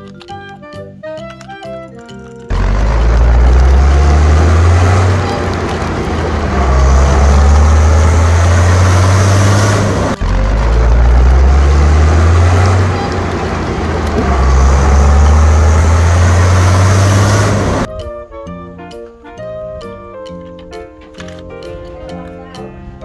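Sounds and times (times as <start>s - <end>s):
engine low rumble: 2.5s - 17.9s.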